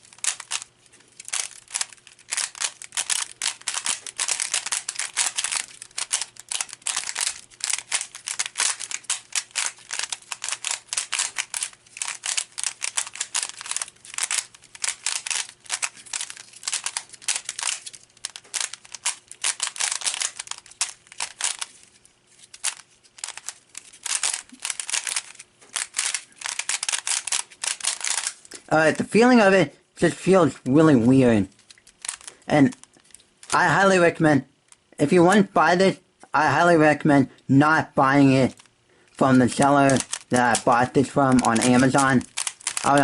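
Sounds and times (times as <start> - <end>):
puzzle cube clicking and scraping: 0.0 - 29.1, 31.4 - 33.8, 38.3 - 43.0.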